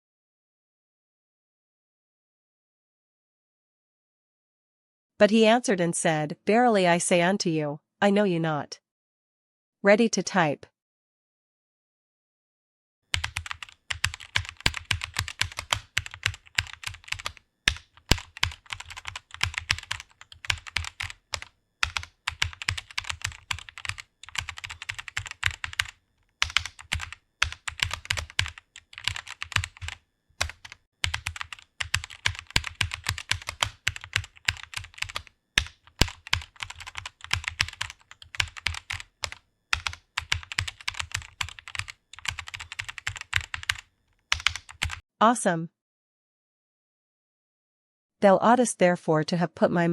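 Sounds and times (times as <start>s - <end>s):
fast typing on keyboard: 13.1s - 45.0s.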